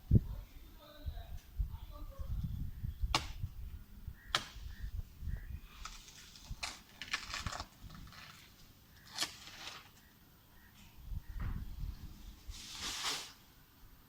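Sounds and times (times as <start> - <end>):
rustling and scraping: 5.7 - 10.1, 10.8 - 13.6.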